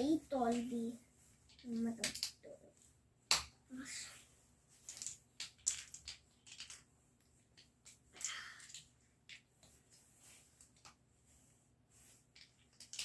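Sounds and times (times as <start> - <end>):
plastic bricks clicking and rattling: 1.5 - 2.5, 4.8 - 6.9, 7.5 - 9.4, 12.3 - 13.0.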